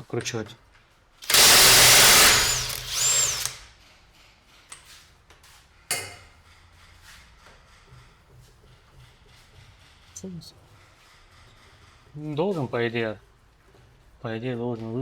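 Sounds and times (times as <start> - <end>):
impact wrench bursts: 1.2 - 3.7.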